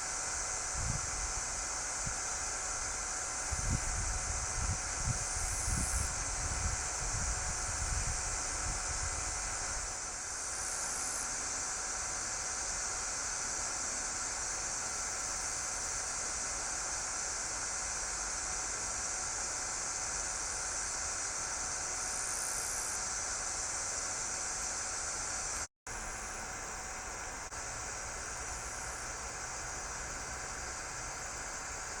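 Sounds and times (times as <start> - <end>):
faint steady hum: 0.0 - 32.0
steady hiss: 0.0 - 32.0.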